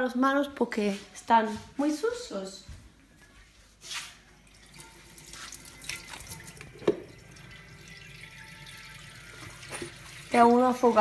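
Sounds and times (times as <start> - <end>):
hands washing under water: 4.8 - 7.1
tap running into sink: 4.8 - 10.4.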